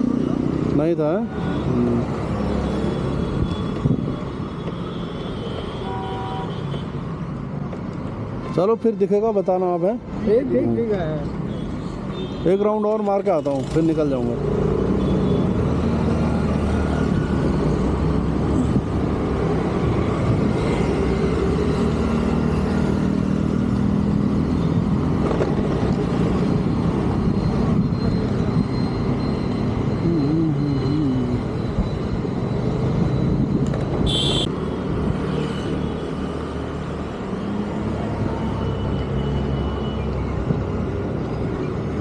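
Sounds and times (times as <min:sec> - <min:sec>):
road traffic: 0:00.0 - 0:42.0
short high-pitched beep: 0:26.6 - 0:33.5.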